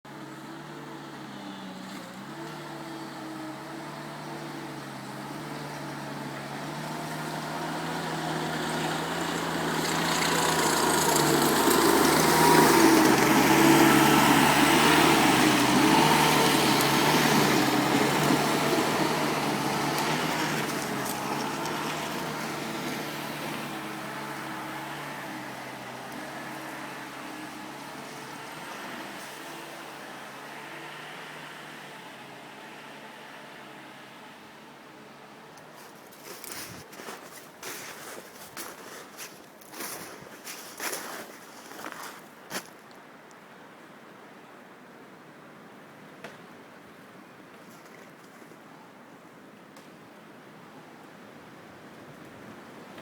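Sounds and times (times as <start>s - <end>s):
skid steer diesel engine running: 0.1s - 33.8s.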